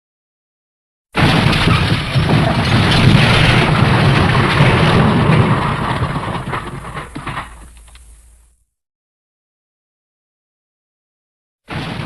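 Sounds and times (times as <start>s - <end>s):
loud deep crash: 1.2s - 7.8s, 11.7s - 12.0s
crackles and clatters: 1.2s - 8.6s.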